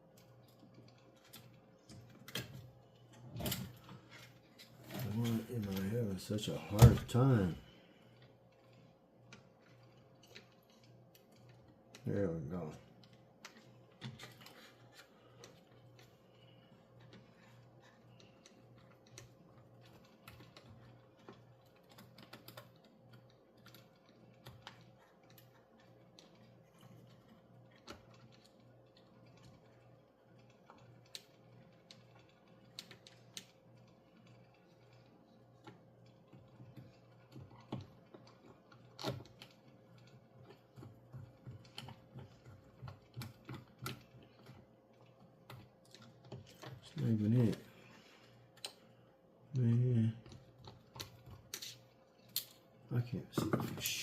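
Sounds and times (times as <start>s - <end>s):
low electrical hum: 0.0s - 54.0s
small parts clicking: 48.3s - 52.7s.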